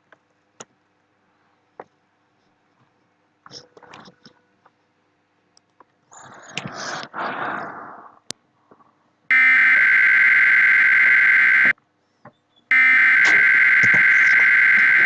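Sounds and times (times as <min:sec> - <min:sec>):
two-tone digital alert screech: 0:12.7 - 0:15.0.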